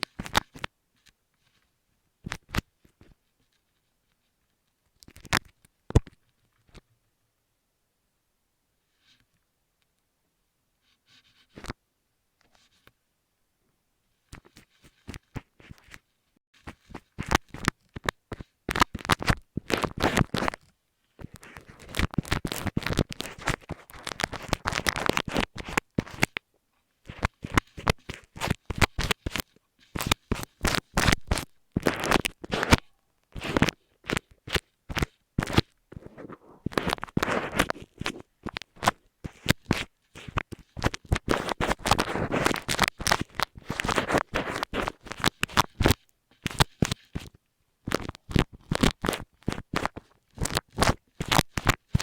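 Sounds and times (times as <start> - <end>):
scratching on a microphone: 14.2 - 26.4, 27.0 - 52.0.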